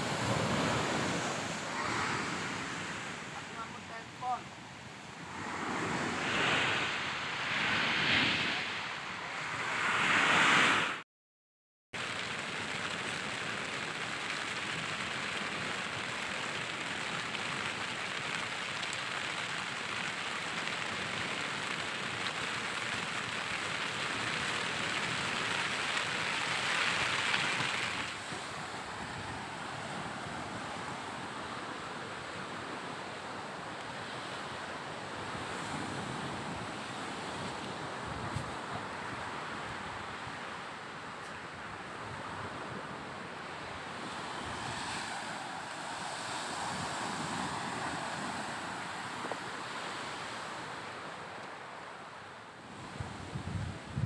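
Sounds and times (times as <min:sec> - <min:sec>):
wind gusts: 0:00.0 - 0:11.0, 0:12.0 - 0:54.0
heavy rain on a tent: 0:12.0 - 0:54.0.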